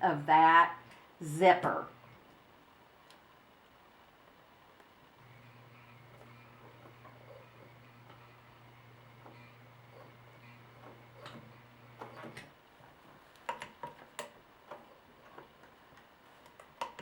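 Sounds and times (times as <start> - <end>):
sewing machine running: 5.2 - 12.4.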